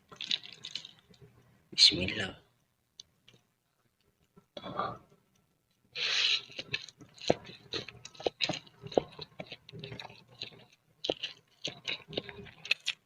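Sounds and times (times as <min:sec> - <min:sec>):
chewing noodles: 0:00.1 - 0:01.4, 0:06.0 - 0:13.0.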